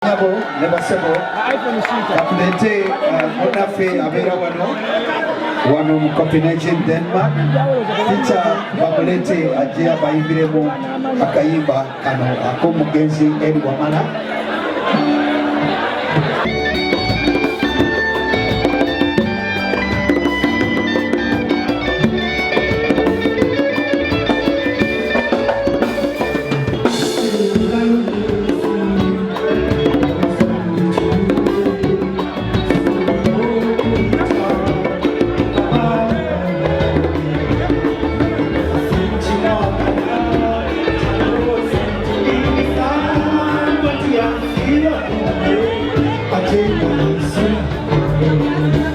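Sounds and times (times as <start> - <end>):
band music with drums: 14.4 - 48.9
person singing: 15.0 - 48.9.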